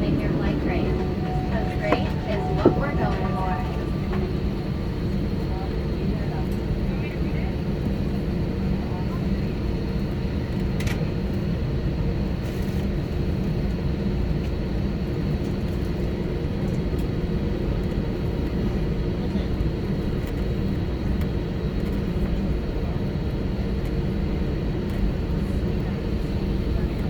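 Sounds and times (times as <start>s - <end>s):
high engine whine: 0.0s - 7.5s
aircraft cabin low rumble: 0.0s - 11.0s.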